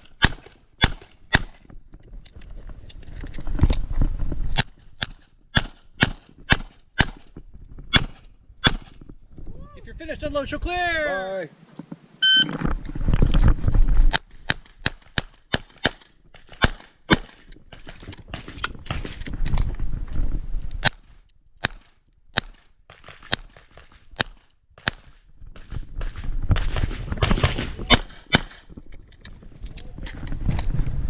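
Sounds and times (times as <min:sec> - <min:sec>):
shot timer beep: 0:12.2 - 0:12.5.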